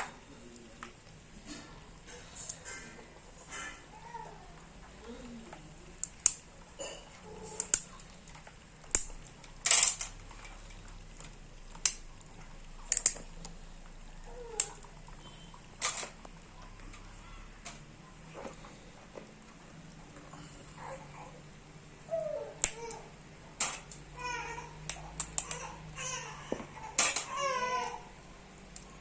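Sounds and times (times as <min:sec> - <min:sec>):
crab shell cracking and snapping: 0:05.9 - 0:06.6, 0:07.4 - 0:09.6, 0:11.2 - 0:13.6, 0:22.6 - 0:22.9, 0:24.8 - 0:25.6.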